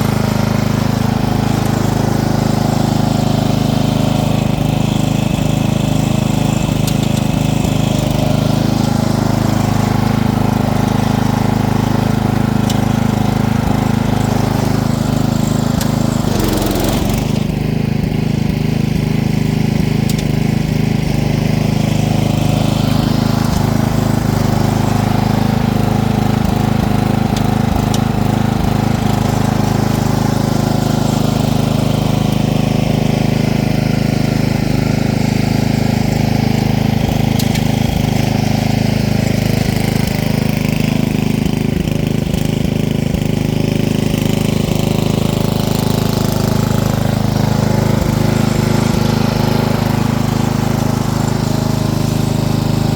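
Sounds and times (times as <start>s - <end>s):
small engine running: 0.0s - 52.9s.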